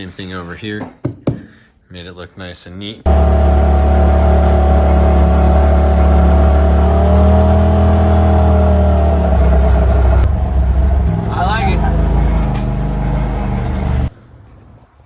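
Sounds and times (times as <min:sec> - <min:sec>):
utility vehicle engine running: 0:03.1 - 0:14.1.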